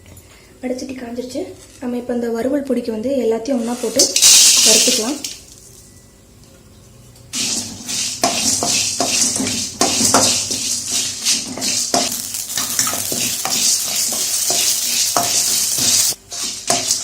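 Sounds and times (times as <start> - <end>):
spices crackling in a hot pan: 4.0 - 5.4, 7.3 - 17.0
spatula scraping a pan: 7.4 - 17.0.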